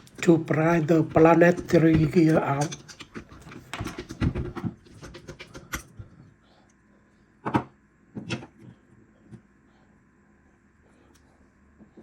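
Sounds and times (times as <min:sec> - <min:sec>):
screwdriver clicking and scraping metal: 0:00.1 - 0:05.9.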